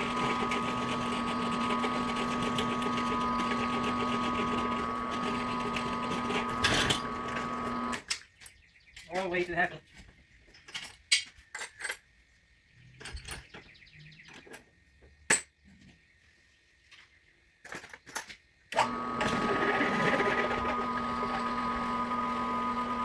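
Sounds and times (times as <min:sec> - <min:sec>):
electric drill drilling steel: 0:00.0 - 0:08.0, 0:18.8 - 0:23.0.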